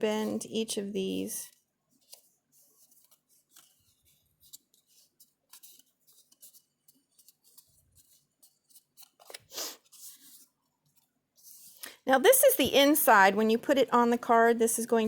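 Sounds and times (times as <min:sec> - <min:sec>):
cardstock rustling and crackling: 0:01.9 - 0:11.8.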